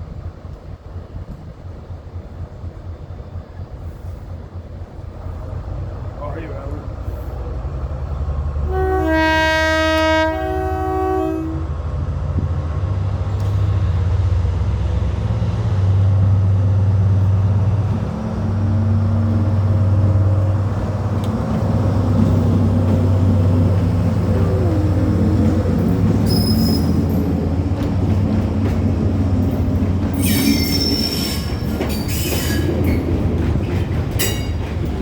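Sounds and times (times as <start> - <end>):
train running low drone: 0.0 - 35.0
two-tone train horn: 8.6 - 11.8, 24.1 - 27.1.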